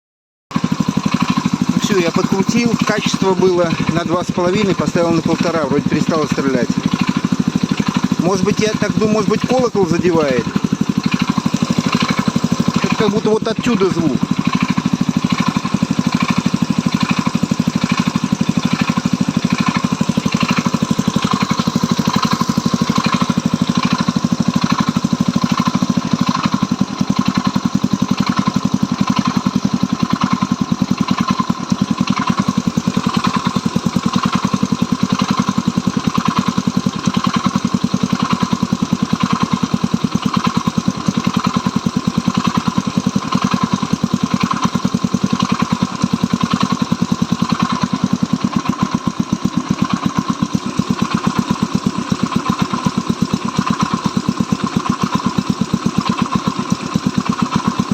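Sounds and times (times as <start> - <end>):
motorcycle engine idling: 0.5 - 57.9.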